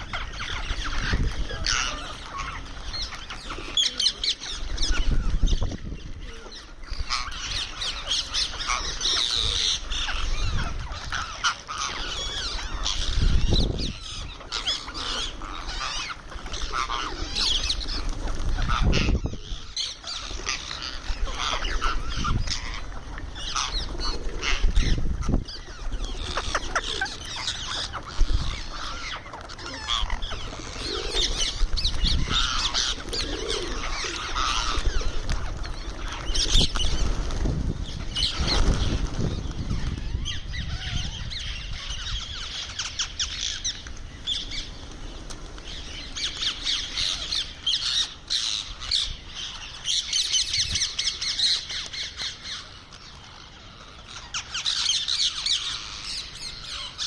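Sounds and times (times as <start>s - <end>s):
parrot squawking and chattering: 26.2s - 31.0s.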